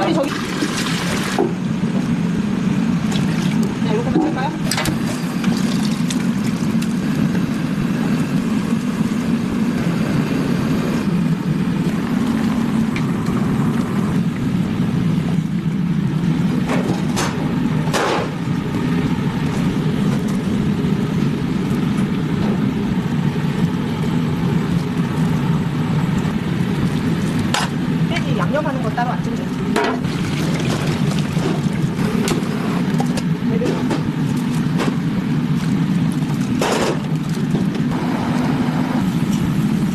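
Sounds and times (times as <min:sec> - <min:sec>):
machinery droning: 0:00.0 - 0:39.9.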